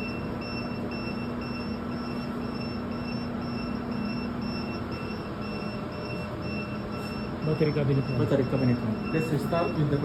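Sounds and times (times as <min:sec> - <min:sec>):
cooling fans and hum: 0:00.0 - 0:10.0
high alarm beeping: 0:00.0 - 0:10.0.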